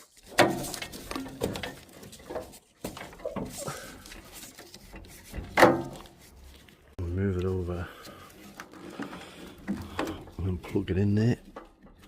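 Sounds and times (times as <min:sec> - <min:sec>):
clicks and knocks of parts: 0:00.0 - 0:06.2.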